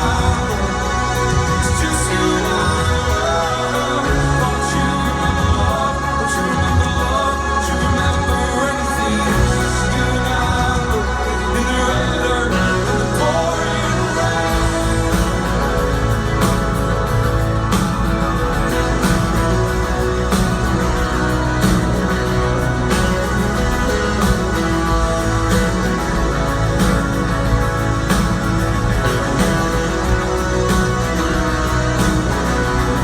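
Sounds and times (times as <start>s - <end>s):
guitars: 0.0s - 33.0s
person singing: 0.0s - 33.0s
steady drum beat: 0.0s - 33.0s.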